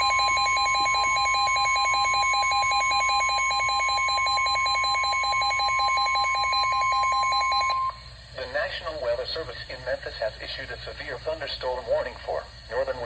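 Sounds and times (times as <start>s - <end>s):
rapid pulsing beep: 0.0s - 8.0s
steady alarm tone: 0.0s - 8.0s.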